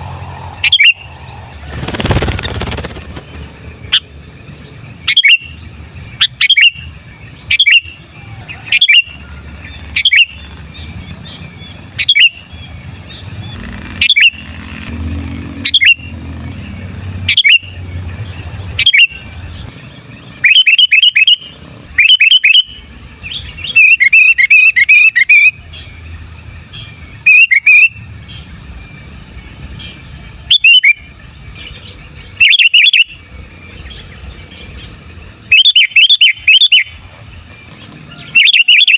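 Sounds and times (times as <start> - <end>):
bird chattering: 0.0 - 4.2
bulbul chirping: 0.0 - 14.6, 15.6 - 28.5, 33.8 - 38.9.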